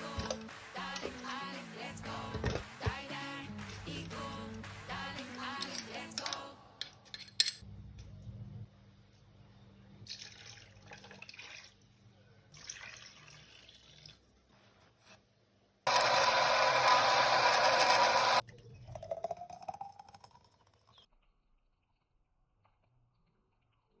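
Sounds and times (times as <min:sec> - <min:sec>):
thick liquid being poured: 0:10.1 - 0:11.8, 0:12.5 - 0:14.2
blender running: 0:15.9 - 0:18.4.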